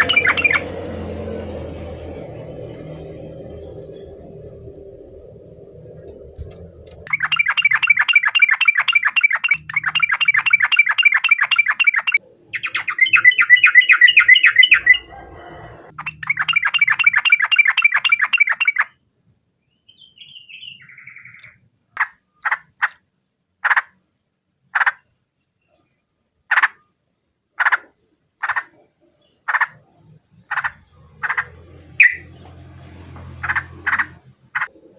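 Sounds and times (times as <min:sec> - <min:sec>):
bulbul chattering calls: 0:00.0 - 0:00.7, 0:06.9 - 0:18.9, 0:27.6 - 0:32.3, 0:33.4 - 0:34.7.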